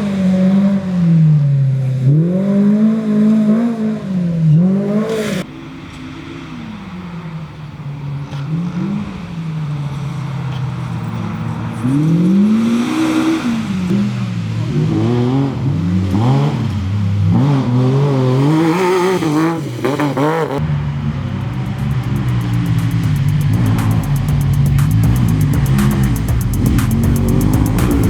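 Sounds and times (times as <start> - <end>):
vehicle engine revving hard: 11.7 - 28.0.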